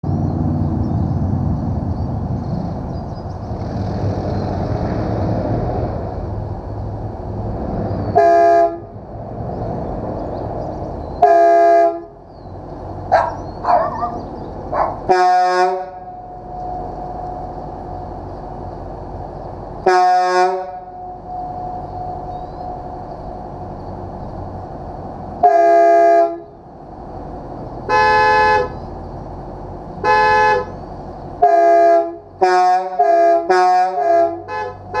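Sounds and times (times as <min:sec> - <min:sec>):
steady low rumble: 0:00.0 - 0:08.2, 0:08.8 - 0:11.4, 0:12.0 - 0:20.0, 0:20.6 - 0:25.6, 0:26.4 - 0:31.5
loud air horn blasts: 0:08.2 - 0:09.0, 0:11.2 - 0:12.2, 0:15.0 - 0:16.9, 0:19.8 - 0:21.8, 0:25.4 - 0:26.5, 0:27.9 - 0:28.8, 0:30.0 - 0:30.8, 0:31.4 - 0:35.0
short rising horn toots: 0:14.8 - 0:17.5.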